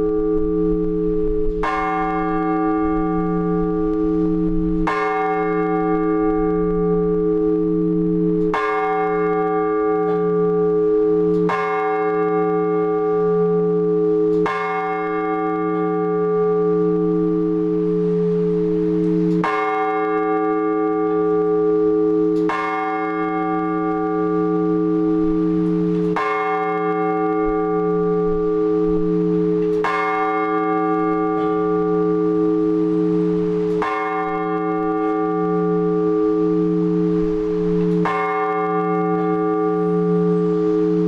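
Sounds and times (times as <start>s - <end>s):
church bell tolling: 0.0s - 41.0s.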